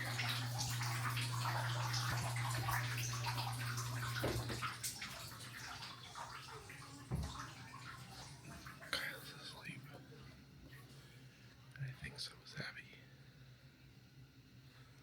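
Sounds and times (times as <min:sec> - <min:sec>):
shower water splashing: 0:00.0 - 0:09.5.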